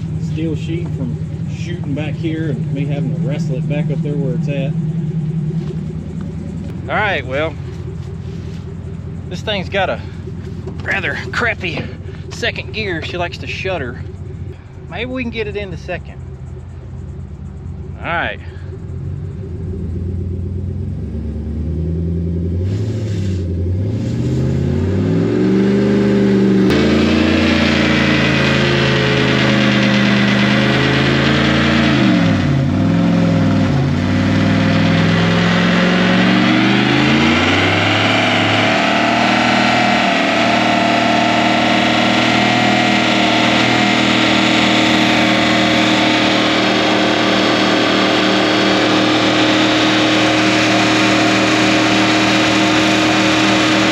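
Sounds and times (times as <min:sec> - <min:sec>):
pickup engine revving: 0:00.0 - 0:53.9
spinning tire hiss: 0:22.6 - 0:24.6.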